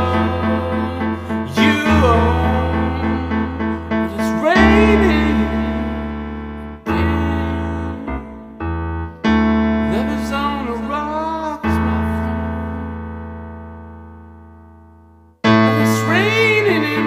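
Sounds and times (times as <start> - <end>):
person singing sustained notes: 0.0 - 8.7
piano chords: 0.0 - 17.0.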